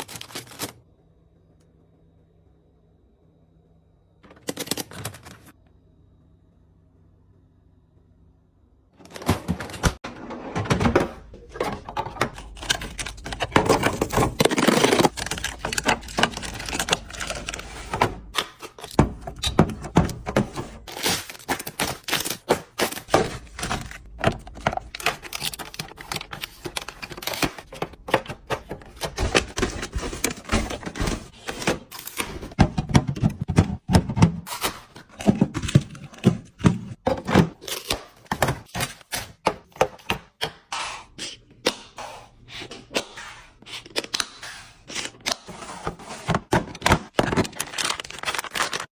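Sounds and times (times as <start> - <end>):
packaging rustling: 0.0 - 0.8, 12.3 - 19.0, 20.2 - 33.4, 46.6 - 48.9
plastic containers and bottles clattering: 9.0 - 40.4, 45.8 - 48.9.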